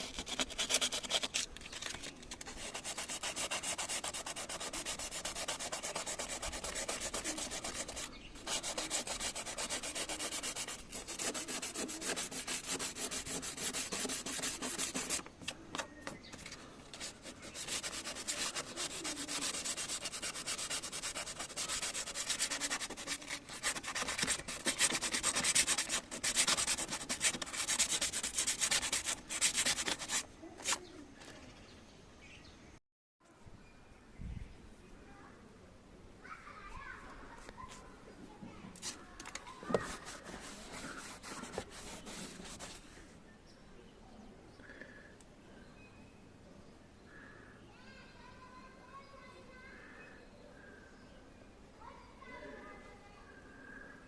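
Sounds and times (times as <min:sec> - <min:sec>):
sandpaper rubbing on metal panel: 0:00.0 - 0:15.6, 0:16.3 - 0:30.8, 0:39.7 - 0:42.8.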